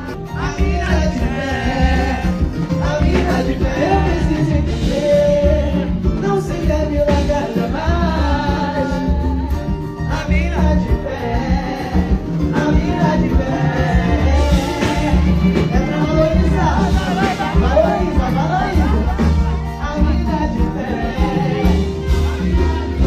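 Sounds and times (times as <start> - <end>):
band playing with singer: 0.0 - 23.0
steady bass beat: 0.0 - 23.0.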